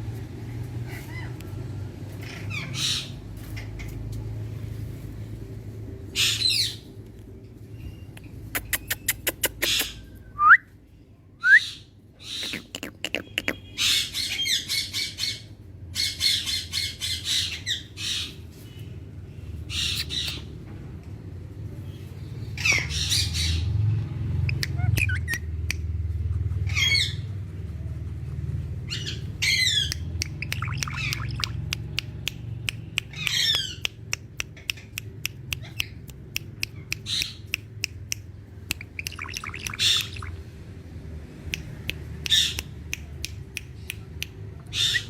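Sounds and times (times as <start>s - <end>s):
parakeet chattering: 12.2s - 15.3s, 24.4s - 27.6s, 28.8s - 31.7s, 38.7s - 40.4s, 42.3s - 45.0s
parakeet squawking: 19.7s - 20.5s, 24.4s - 25.6s, 26.6s - 27.3s, 28.8s - 31.6s, 38.8s - 40.4s, 44.6s - 45.0s
parakeet clicking notes: 29.9s - 40.4s.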